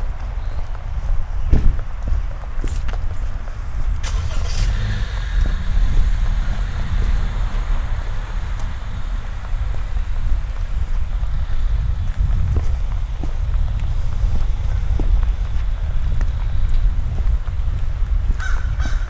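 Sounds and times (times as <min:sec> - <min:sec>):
tyres hissing on wet road: 0:04.0 - 0:18.2.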